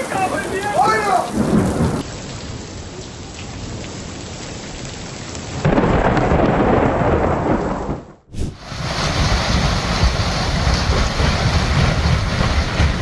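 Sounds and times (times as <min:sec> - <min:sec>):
thunder crash rumbling: 0:00.0 - 0:02.0, 0:05.6 - 0:13.0
heavy rain: 0:00.0 - 0:13.0.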